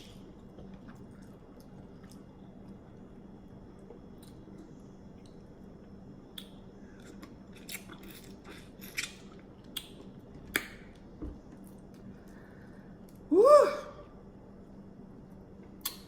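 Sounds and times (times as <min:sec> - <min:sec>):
faint steady hum: 0:00.0 - 0:16.0
eating seafood clicks and cracks: 0:06.3 - 0:12.4, 0:15.8 - 0:16.0.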